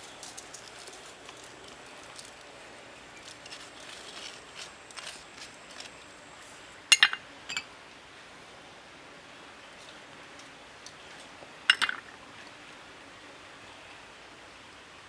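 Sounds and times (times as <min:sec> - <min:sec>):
ringing dish clinks: 0:06.9 - 0:07.7
utensils and dishes tapping: 0:06.9 - 0:07.7.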